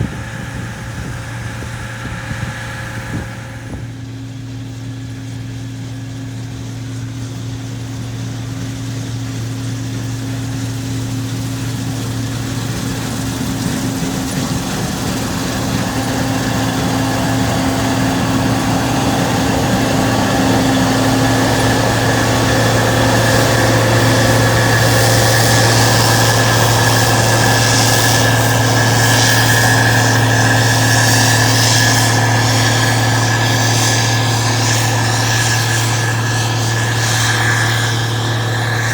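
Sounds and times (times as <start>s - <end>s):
large engine humming: 0.0s - 38.9s.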